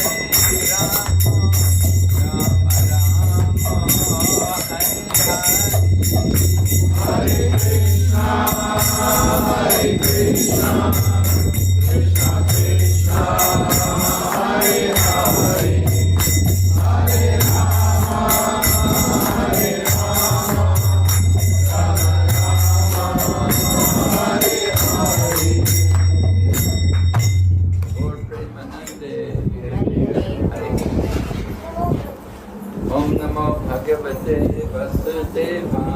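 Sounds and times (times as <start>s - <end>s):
hand cymbals ringing: 0.0s - 28.4s
group devotional singing: 6.6s - 26.3s.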